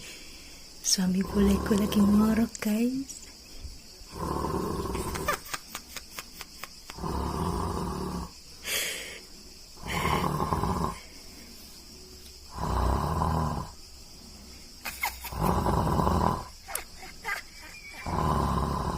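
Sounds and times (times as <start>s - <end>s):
man snoring: 4.1s - 5.3s, 6.9s - 8.4s, 9.8s - 11.0s, 12.5s - 13.8s, 15.3s - 16.6s, 18.0s - 18.9s.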